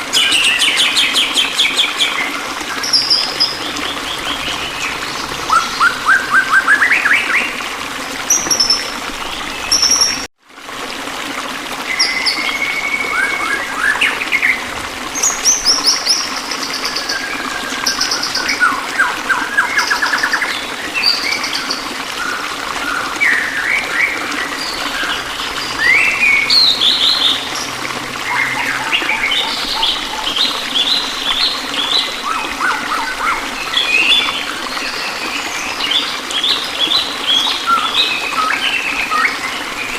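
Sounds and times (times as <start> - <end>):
running water: 0.0 - 39.9
songbirds chirping and trilling: 23.2 - 34.6.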